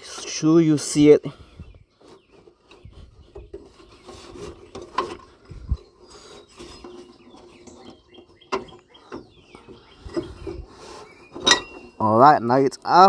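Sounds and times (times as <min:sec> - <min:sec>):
rubber belt rubbing and scraping: 0:01.9 - 0:12.2.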